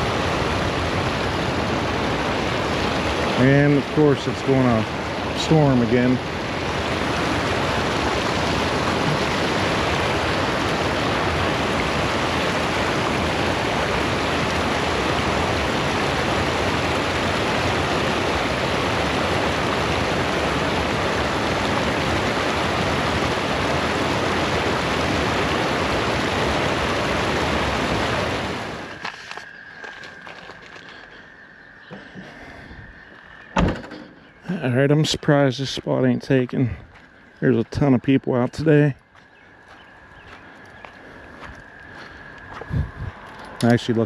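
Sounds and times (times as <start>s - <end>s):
creek water rushing over rocks: 0.0s - 31.1s.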